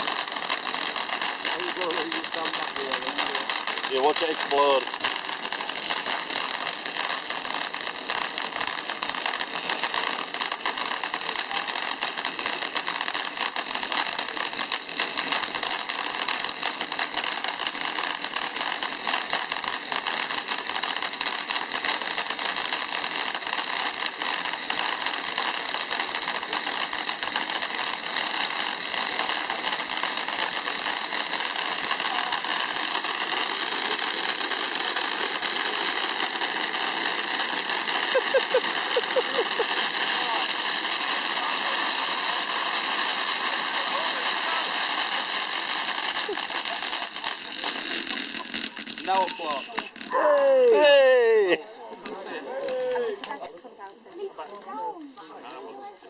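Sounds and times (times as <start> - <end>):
firework spark jet hissing: 0.0 - 51.6
fine crackling: 28.2 - 45.2.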